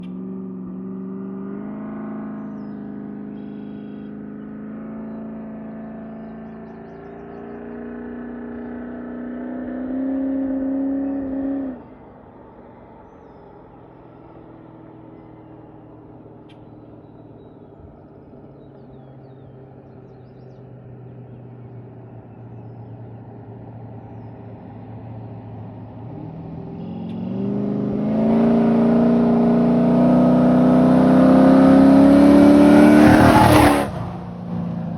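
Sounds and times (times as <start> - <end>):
car engine revving with misfire: 26.0 - 34.3.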